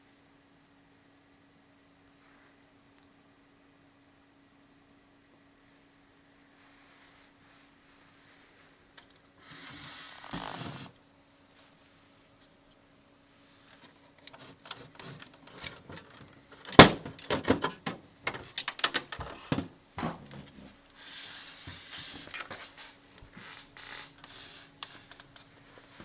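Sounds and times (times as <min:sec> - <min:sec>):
faint steady hum: 0:00.0 - 0:26.0
hissy rubbing noise: 0:20.6 - 0:26.0.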